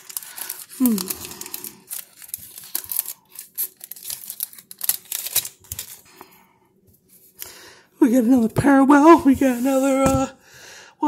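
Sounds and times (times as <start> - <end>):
foil wrapper tearing and crinkling: 0.0 - 6.1.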